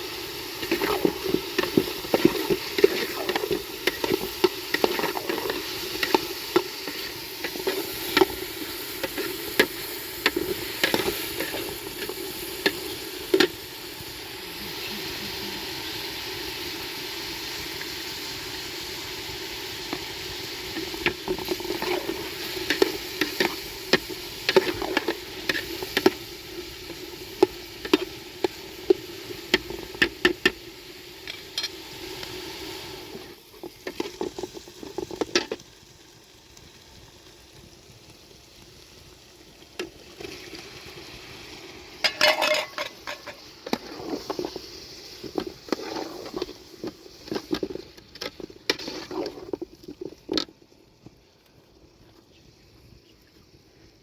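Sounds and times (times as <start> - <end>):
food sizzling in a pan: 0.0 - 54.0
utensil stirring and scraping: 0.2 - 13.7, 20.7 - 28.6, 42.0 - 50.5.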